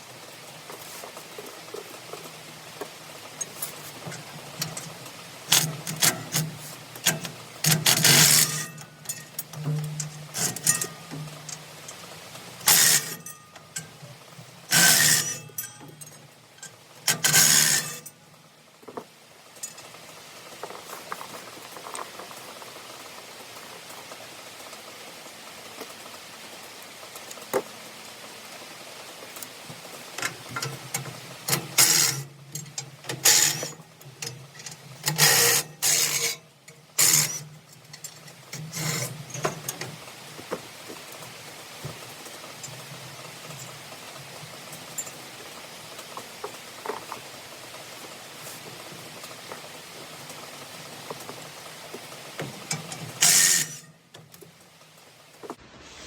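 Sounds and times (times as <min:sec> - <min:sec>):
steady hiss: 0:00.0 - 0:56.0
metal clanks and scrapes: 0:03.4 - 0:11.6, 0:12.6 - 0:13.9, 0:14.7 - 0:16.2, 0:17.1 - 0:18.1, 0:30.2 - 0:39.9, 0:52.7 - 0:53.9.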